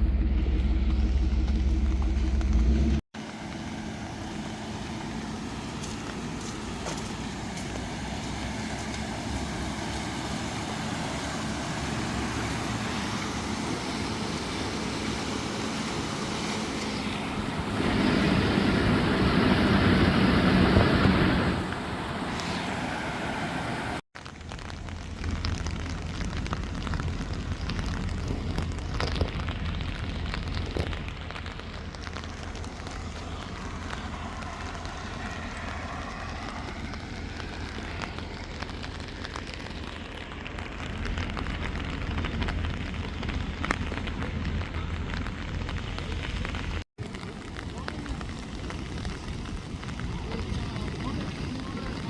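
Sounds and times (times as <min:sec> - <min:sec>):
steady low hum: 0:00.0 - 0:03.0
heavy rain falling: 0:00.0 - 0:52.0.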